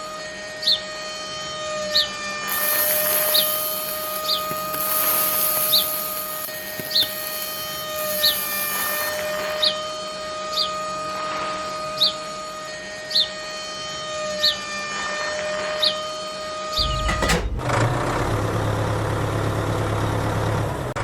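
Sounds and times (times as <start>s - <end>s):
hissing noise: 2.5s - 9.6s.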